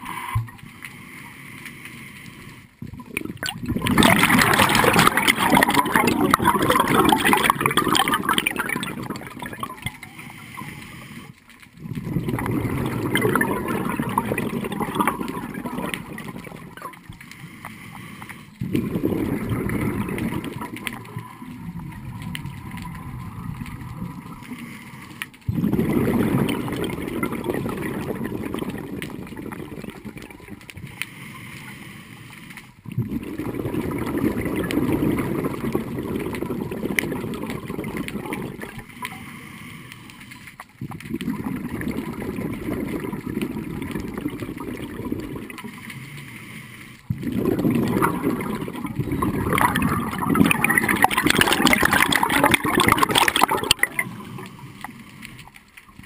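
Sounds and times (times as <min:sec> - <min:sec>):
regulator exhalation bubbles: 0:02.8 - 0:11.2, 0:11.8 - 0:31.2, 0:32.9 - 0:39.4, 0:40.8 - 0:45.9, 0:47.1 - 0:55.4.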